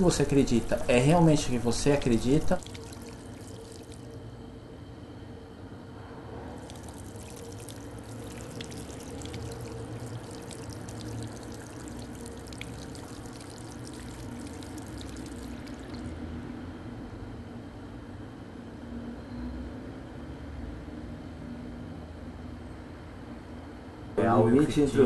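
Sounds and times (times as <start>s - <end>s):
liquid pouring: 0.0s - 4.2s, 6.5s - 16.2s.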